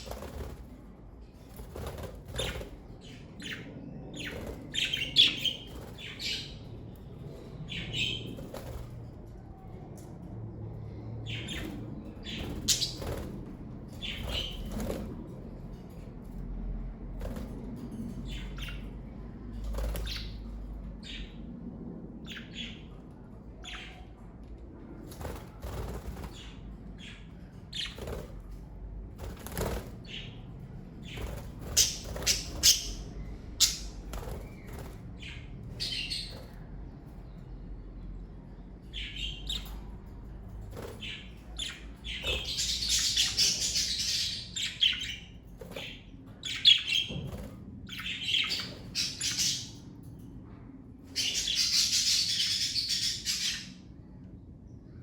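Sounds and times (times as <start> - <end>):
budgerigars chirping: 31.8 - 33.0.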